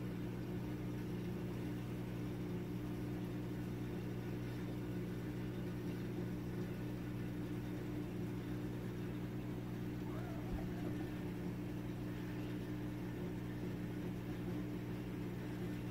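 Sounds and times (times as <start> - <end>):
low electrical hum: 0.0 - 15.9
faint wavering sound: 10.0 - 11.6.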